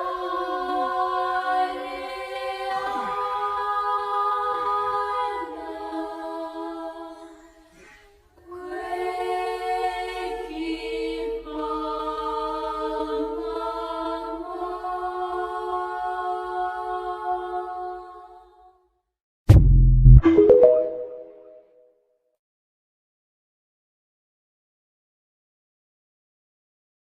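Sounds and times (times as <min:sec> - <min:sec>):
slow choir-like music: 0:00.0 - 0:18.8.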